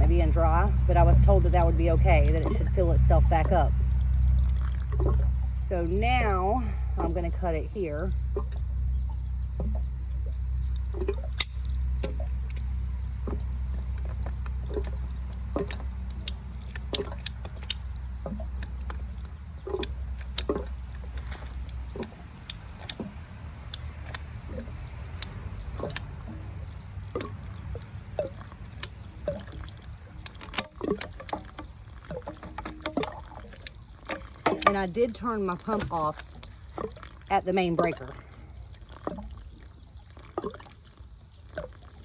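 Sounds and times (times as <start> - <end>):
low rumble: 0.0 - 30.2
pipe cutter clicking: 15.6 - 23.1, 23.7 - 26.1, 30.1 - 31.7.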